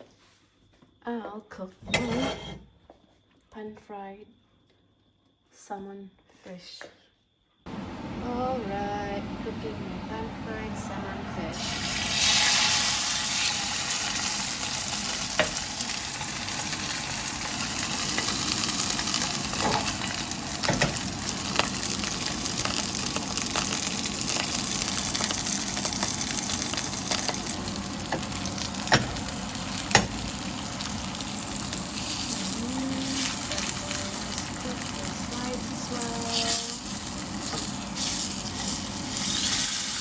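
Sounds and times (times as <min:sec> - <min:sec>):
fish sizzling in a frying pan: 0:11.6 - 0:40.0.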